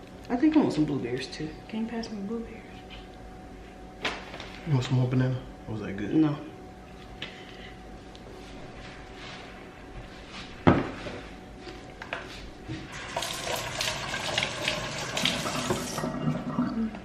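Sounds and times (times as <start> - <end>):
kitchen tap running: 12.9 - 17.0.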